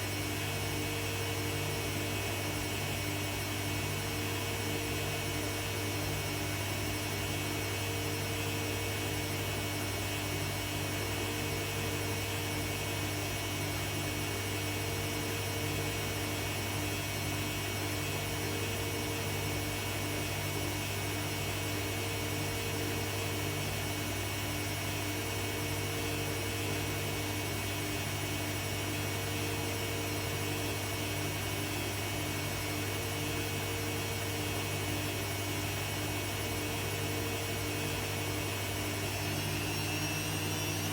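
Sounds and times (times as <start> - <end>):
washing machine spinning: 21.4 - 40.9.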